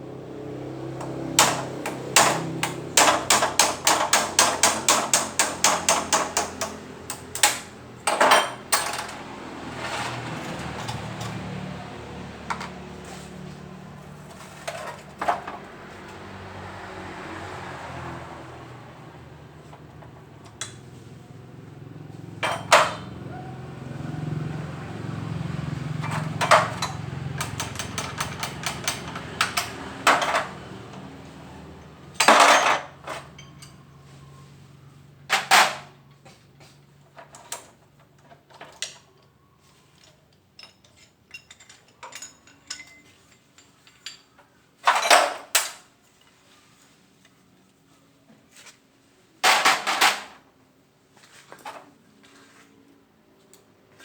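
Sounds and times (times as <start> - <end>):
metal tools clanking and knocking: 1.0 - 16.3, 22.3 - 23.5, 25.1 - 31.2, 31.8 - 34.4, 35.3 - 36.0, 37.1 - 45.8, 49.4 - 50.4.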